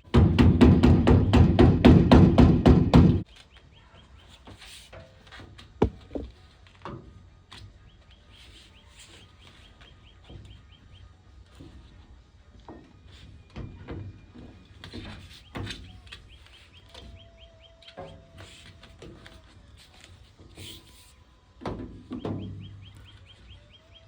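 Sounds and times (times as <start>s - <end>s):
light knocks and handling noises: 4.3s - 7.8s
bird chirping: 22.1s - 24.0s.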